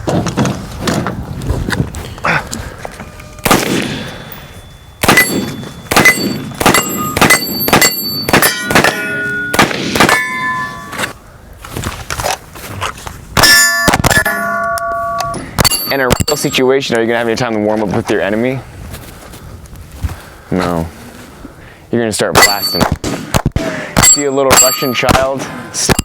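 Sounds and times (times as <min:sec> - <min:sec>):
steel plate ringing ping: 0:02.9 - 0:11.1, 0:13.4 - 0:16.7, 0:22.4 - 0:22.9, 0:24.0 - 0:25.1
gunshots: 0:03.4 - 0:04.3, 0:05.0 - 0:10.9.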